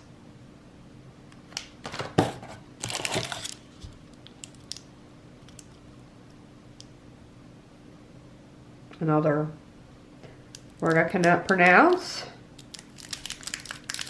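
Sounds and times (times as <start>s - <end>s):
plastic wrappers crinkling: 2.8s - 5.8s, 10.5s - 14.0s.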